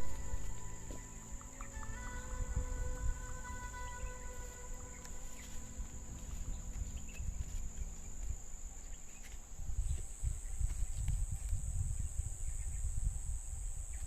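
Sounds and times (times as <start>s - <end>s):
sustained musical chord: 0.0s - 9.2s
low uneven rumble: 0.0s - 13.3s
high-pitched insect chorus: 0.0s - 14.0s.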